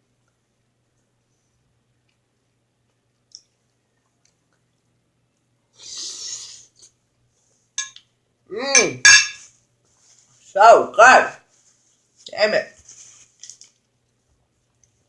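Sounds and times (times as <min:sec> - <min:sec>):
short breathy hiss: 0:05.8 - 0:06.8.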